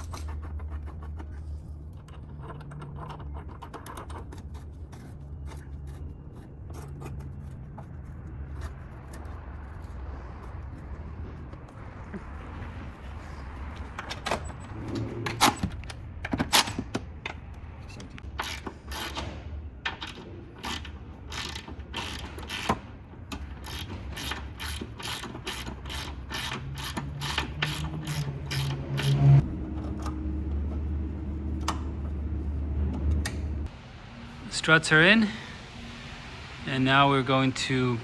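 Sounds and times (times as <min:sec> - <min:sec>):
steady low hum: 0:00.0 - 0:38.0
ratchet wrench clicking: 0:18.2 - 0:19.3, 0:19.9 - 0:30.2.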